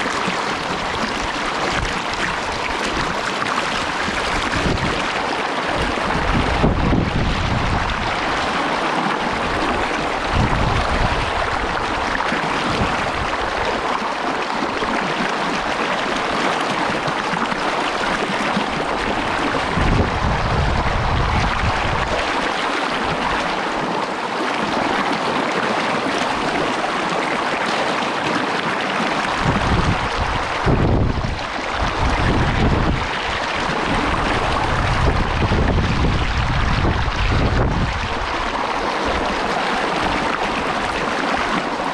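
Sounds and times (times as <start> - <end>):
wind buffeting microphone: 0.0 - 14.0, 18.6 - 23.6, 29.3 - 41.9
creek rushing over rocks: 0.0 - 41.9.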